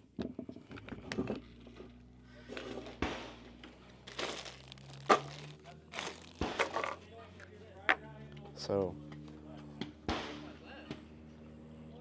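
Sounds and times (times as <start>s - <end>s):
rustling handling noise: 3.9s - 7.0s
sharp cracks: 4.1s - 6.9s
gunshot: 10.1s - 10.5s.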